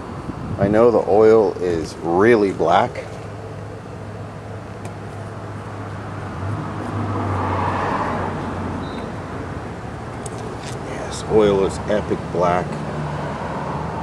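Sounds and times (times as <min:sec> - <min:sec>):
steady low hum: 0:00.0 - 0:14.0
vehicle passing: 0:05.7 - 0:14.0.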